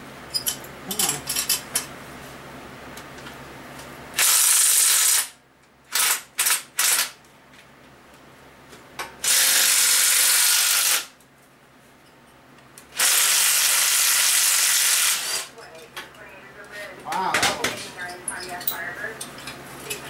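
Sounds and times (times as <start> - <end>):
power tool running in bursts: 9.2 - 11.1, 12.9 - 15.5.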